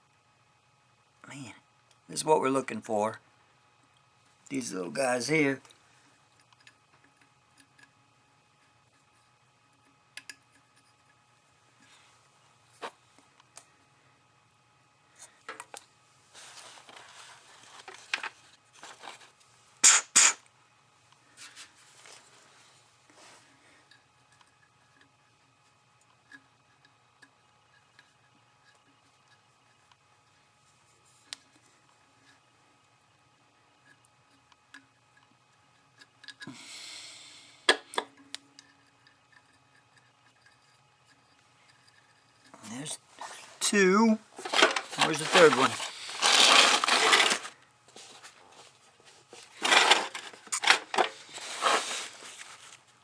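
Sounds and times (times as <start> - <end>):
metal hardware rustling and clicking: 44.4 - 47.6, 49.4 - 52.8.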